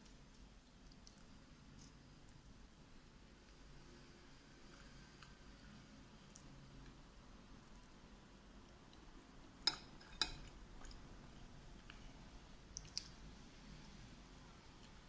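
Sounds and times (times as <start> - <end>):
cutlery clinking against a dish: 9.6 - 10.5.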